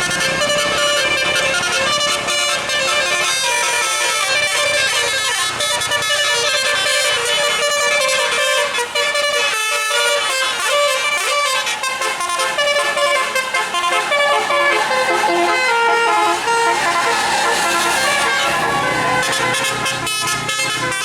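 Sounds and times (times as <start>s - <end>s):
musical bus air horns: 0.0s - 21.0s.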